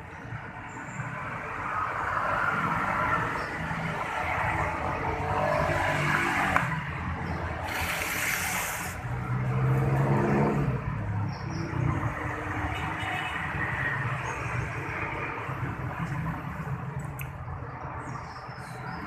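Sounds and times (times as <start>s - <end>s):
burst of hiss: 7.6s - 9.0s.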